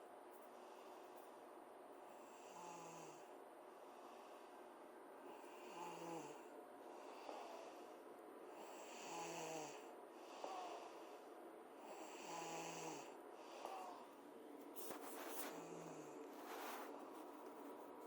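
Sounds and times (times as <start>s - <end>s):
girl snoring: 5.3s - 7.7s, 8.6s - 11.0s, 11.8s - 14.1s.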